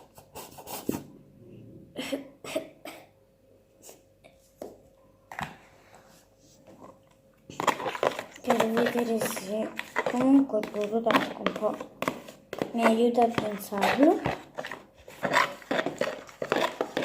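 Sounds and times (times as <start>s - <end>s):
sticky slime squelching: 6.9s - 17.0s.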